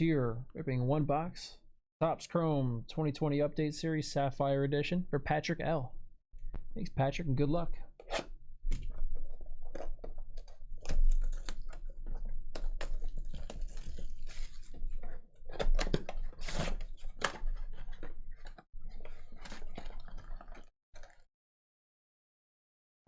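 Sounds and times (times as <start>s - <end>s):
cardboard and wrappers crinkling: 9.3s - 21.2s.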